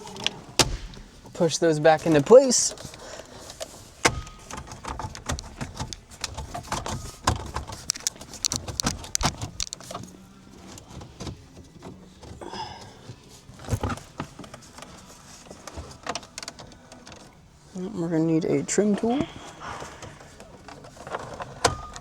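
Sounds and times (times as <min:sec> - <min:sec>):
plastic trim clicks and rattles: 0:02.0 - 0:10.1.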